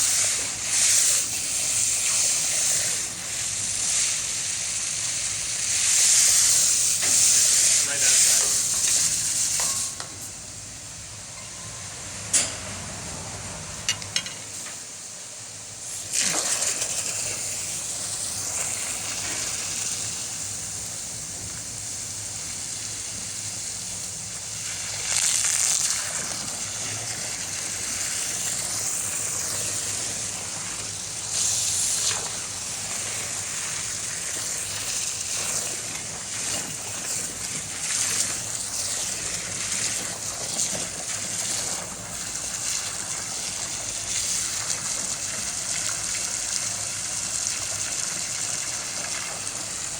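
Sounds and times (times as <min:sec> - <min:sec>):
water rushing and sloshing in tank: 0:00.0 - 0:49.9.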